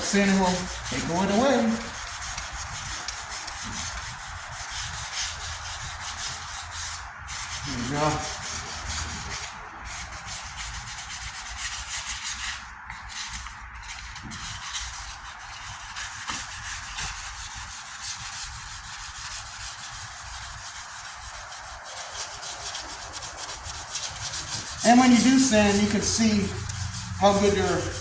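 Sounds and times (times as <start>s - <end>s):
sandpaper scrubbing on steel: 0.0s - 28.0s.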